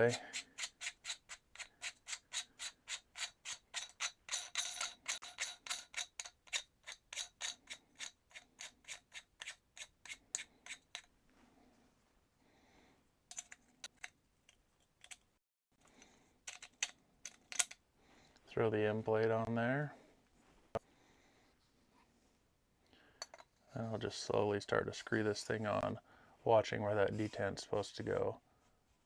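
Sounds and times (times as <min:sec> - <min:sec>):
nut spinning with metallic clicks: 0:00.0 - 0:11.1, 0:16.5 - 0:17.8
parts being handled: 0:00.0 - 0:11.2, 0:13.3 - 0:17.8, 0:23.2 - 0:23.6.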